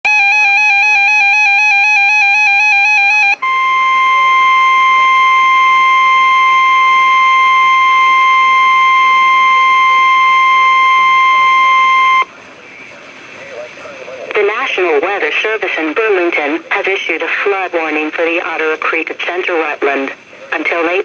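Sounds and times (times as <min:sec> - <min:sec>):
steady alarm tone: 0:00.1 - 0:12.3.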